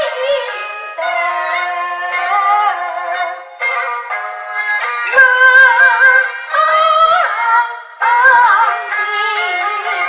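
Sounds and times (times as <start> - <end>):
opera singing: 5.1 - 10.0.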